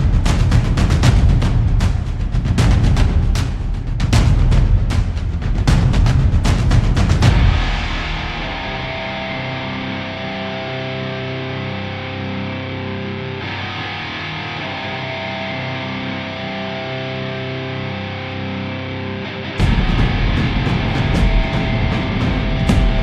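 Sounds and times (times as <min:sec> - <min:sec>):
distorted electric guitar chords: 0:07.3 - 0:23.0.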